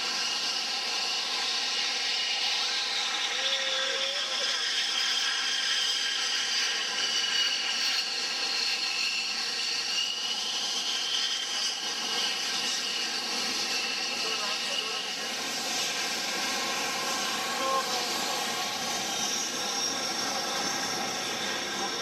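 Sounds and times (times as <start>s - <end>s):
jet engines whining: 0.0s - 22.0s.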